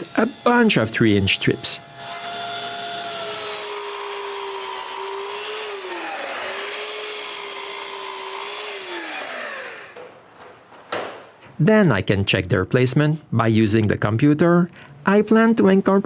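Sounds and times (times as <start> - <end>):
power saw cutting plywood: 0.0 - 10.1.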